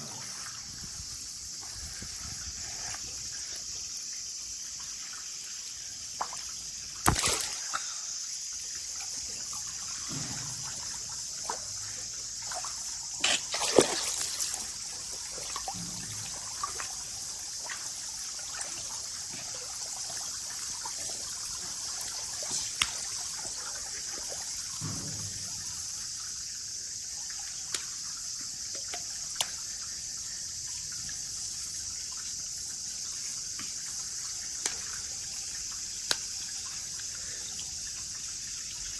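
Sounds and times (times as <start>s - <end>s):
water trickling: 0.0s - 38.9s
short splashes: 7.0s - 8.0s, 12.5s - 14.8s.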